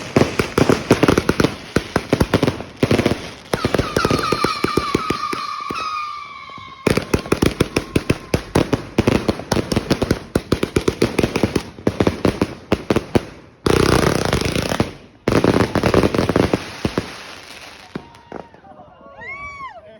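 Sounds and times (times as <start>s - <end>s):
firework cake shots and pops: 0.0s - 15.0s
firework crackle: 0.0s - 18.7s
falling firework whistles: 3.5s - 8.8s.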